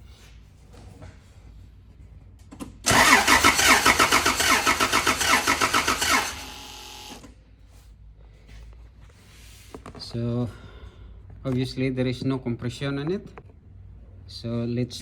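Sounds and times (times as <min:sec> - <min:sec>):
engine cranking without starting: 0:02.9 - 0:07.3.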